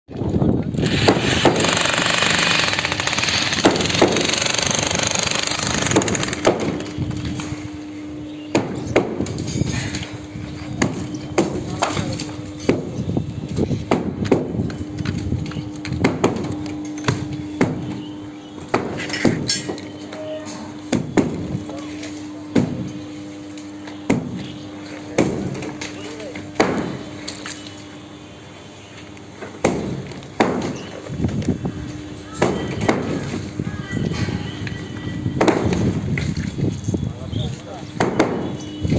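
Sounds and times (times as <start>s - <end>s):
jackhammer breaking concrete: 0.8s - 6.9s
hammer striking concrete: 38.0s - 38.6s.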